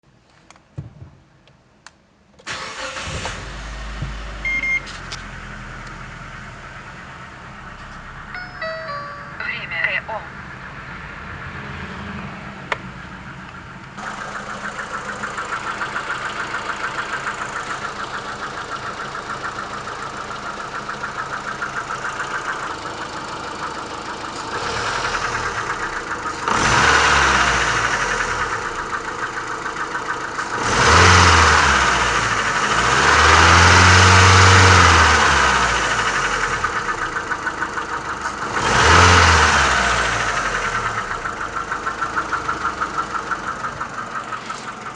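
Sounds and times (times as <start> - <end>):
engine idling with knock: 3.9 - 4.3, 12.7 - 44.9
engine revving: 13.9 - 44.9.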